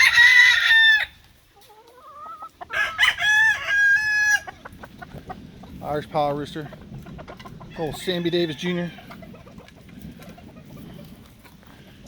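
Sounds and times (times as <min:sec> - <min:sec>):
roosters crowing: 0:00.0 - 0:01.2, 0:01.8 - 0:05.5, 0:07.2 - 0:11.1.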